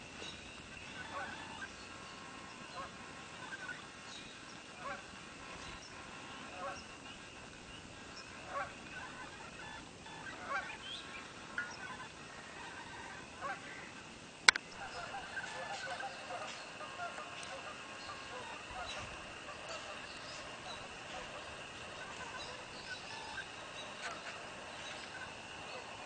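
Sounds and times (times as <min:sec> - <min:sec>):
short bird calls: 0:00.2 - 0:26.0.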